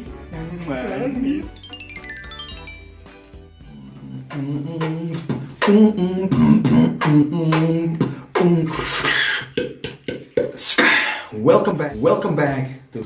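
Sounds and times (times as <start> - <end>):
rhythmic vocal track with beat: 3.6 - 12.7.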